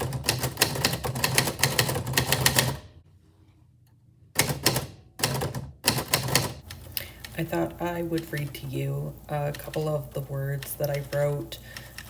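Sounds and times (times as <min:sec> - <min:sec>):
typewriter keys clacking: 0:04.4 - 0:08.6, 0:09.4 - 0:12.0.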